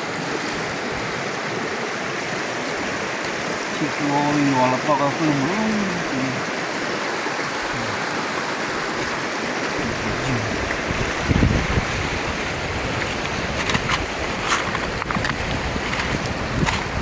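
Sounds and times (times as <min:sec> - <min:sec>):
river water rushing: 0:00.0 - 0:17.0
wind buffeting on microphone: 0:08.8 - 0:17.0.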